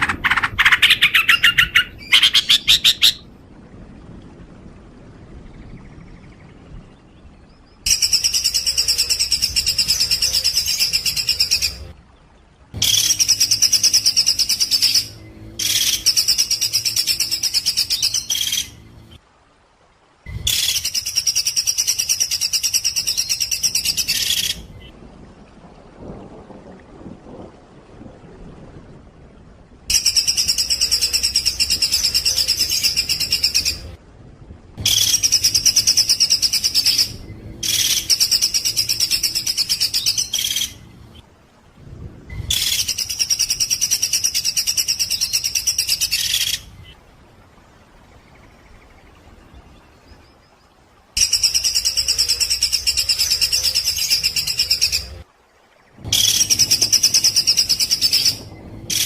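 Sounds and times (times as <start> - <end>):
songbird harsh rapid notes: 0.0 - 3.2.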